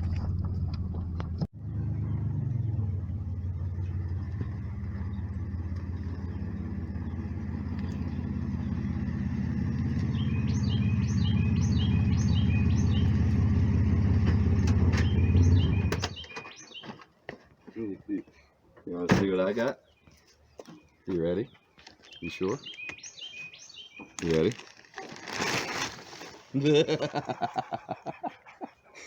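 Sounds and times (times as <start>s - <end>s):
truck engine and road rumble: 0.0s - 17.2s.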